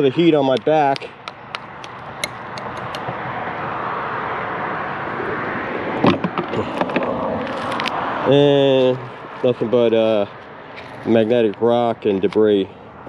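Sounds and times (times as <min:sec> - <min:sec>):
vehicle approaching: 0:00.0 - 0:13.0
sharp clicks: 0:00.5 - 0:03.1.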